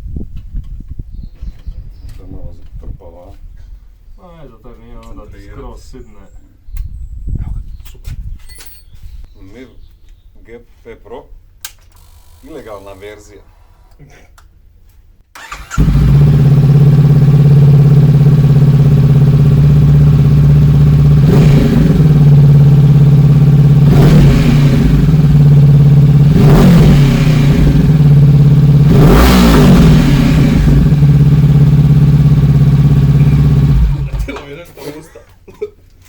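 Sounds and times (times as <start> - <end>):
motorcycle engine idling and revving: 15.4 - 34.5.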